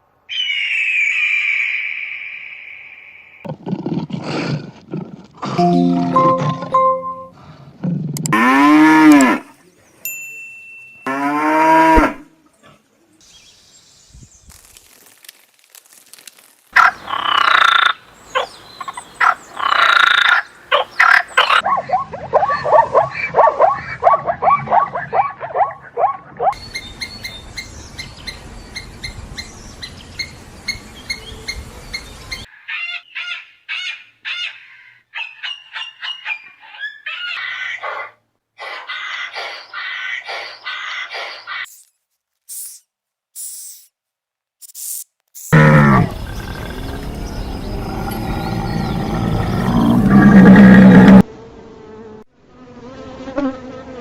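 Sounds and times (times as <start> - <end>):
short high chirps: 5.6 - 7.4
cattle mooing: 45.6 - 51.2.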